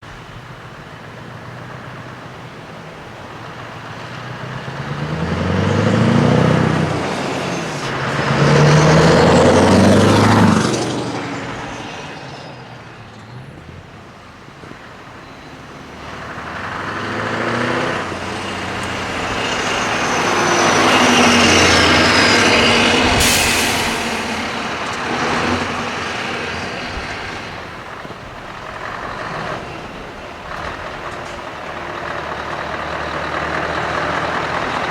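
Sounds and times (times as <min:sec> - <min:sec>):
trucks driving past: 0:00.0 - 0:34.9
short sharp hiss: 0:23.0 - 0:24.6.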